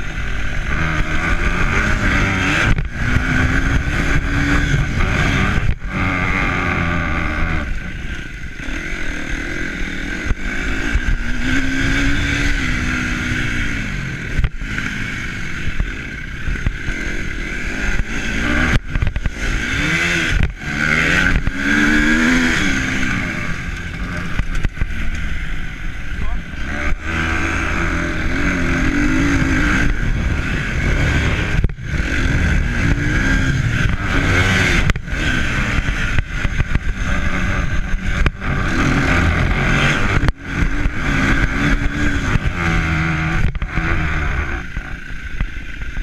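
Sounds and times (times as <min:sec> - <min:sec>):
engine rising and falling: 0:09.5 - 0:45.1
wind rumble on microphone: 0:17.6 - 0:46.0.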